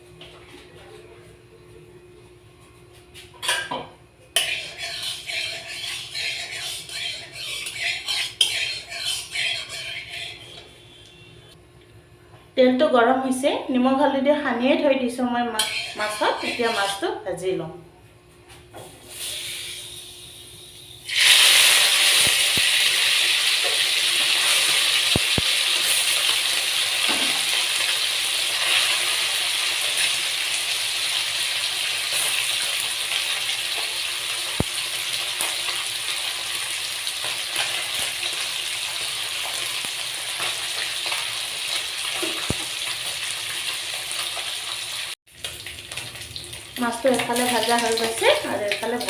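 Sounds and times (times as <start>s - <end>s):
fish sizzling in hot oil: 21.1s - 49.0s.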